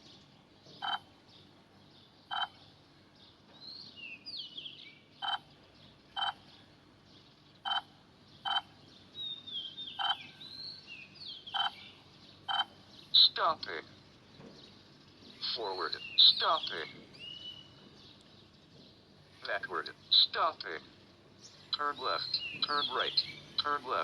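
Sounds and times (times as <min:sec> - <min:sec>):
croaking animal calls: 0:00.8 - 0:01.1, 0:02.3 - 0:02.6, 0:05.2 - 0:05.5, 0:06.1 - 0:06.5, 0:07.6 - 0:08.8, 0:09.9 - 0:10.3, 0:11.4 - 0:12.8
gliding bird-like chirps: 0:09.4 - 0:13.4.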